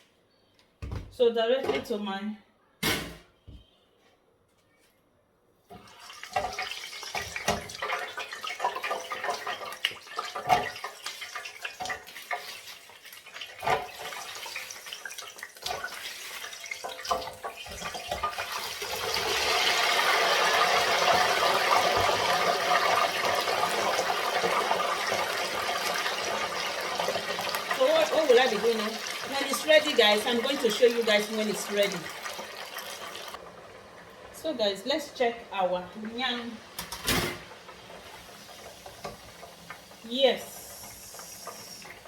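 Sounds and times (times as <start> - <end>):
knocks and clatters in pan: 5.8 - 27.8, 36.8 - 37.9
food frying in hot oil: 5.8 - 42.0.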